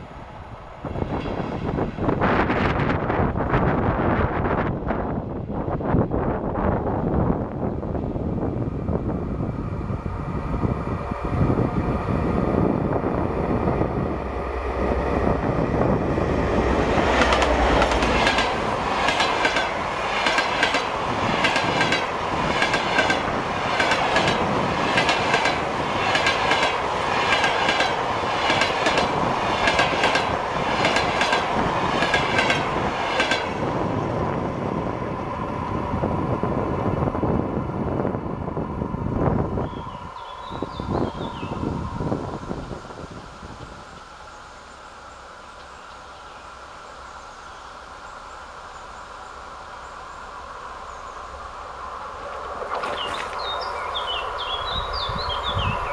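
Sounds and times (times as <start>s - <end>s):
train running noise: 0.0s - 55.9s
wheels clacking over rail joints: 16.8s - 33.5s.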